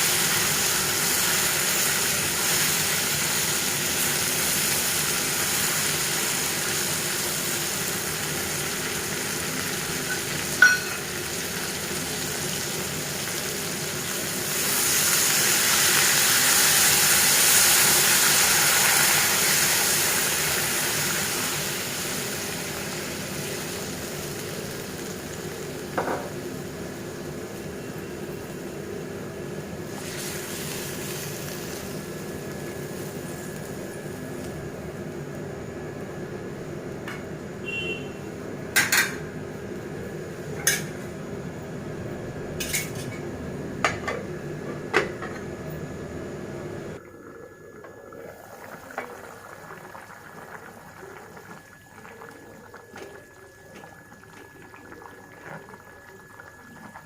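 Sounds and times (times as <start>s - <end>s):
curry sizzling in a pot: 0.0s - 28.7s, 29.9s - 34.5s.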